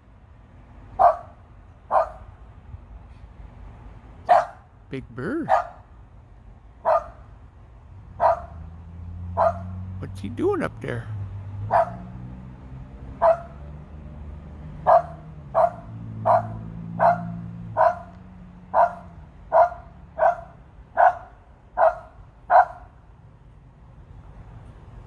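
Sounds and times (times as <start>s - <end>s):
dog barking: 1.0s - 2.3s, 4.3s - 4.7s, 5.5s - 5.8s, 6.8s - 7.3s, 8.2s - 8.6s, 9.3s - 9.8s, 11.6s - 12.2s, 13.2s - 13.6s, 14.8s - 22.9s.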